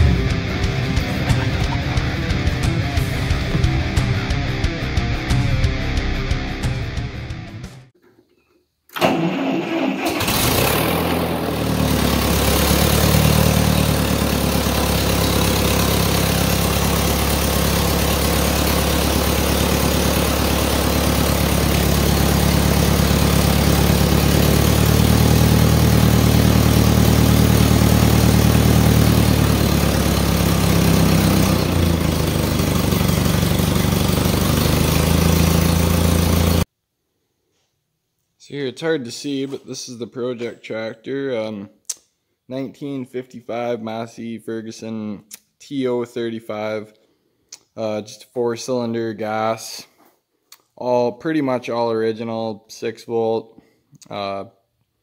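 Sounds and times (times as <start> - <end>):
tractor engine cranking and idling: 0.0 - 4.1, 8.9 - 36.7.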